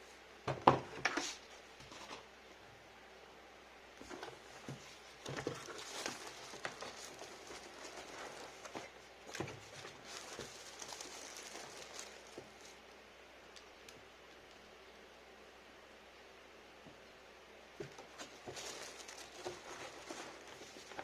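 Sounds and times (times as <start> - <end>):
packaging rustling and crinkling: 4.0 - 13.0, 17.8 - 21.0.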